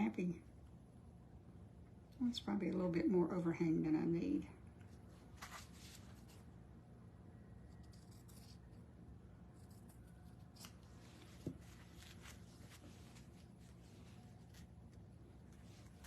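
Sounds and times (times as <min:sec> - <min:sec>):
rustling of craft materials: 0:04.8 - 0:06.5, 0:10.3 - 0:16.0.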